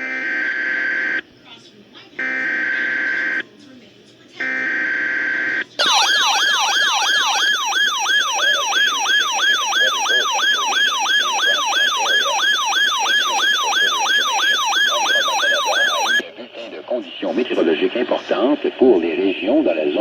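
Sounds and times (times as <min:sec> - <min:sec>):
electronic siren alarm wailing: 0:04.4 - 0:16.2.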